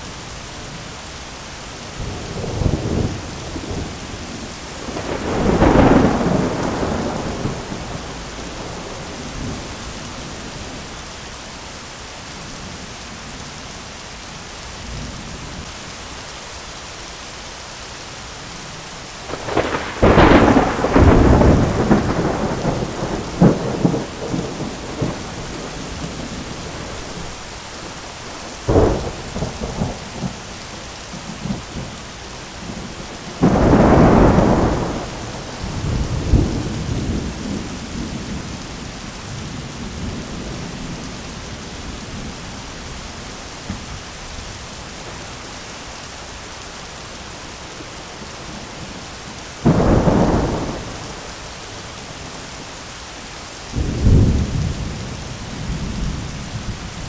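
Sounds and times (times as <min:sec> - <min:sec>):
steady rain: 0:00.0 - 0:57.0
thunder rumbling: 0:02.0 - 0:10.9, 0:19.2 - 0:32.0, 0:32.6 - 0:45.4, 0:48.0 - 0:52.5, 0:53.7 - 0:57.0.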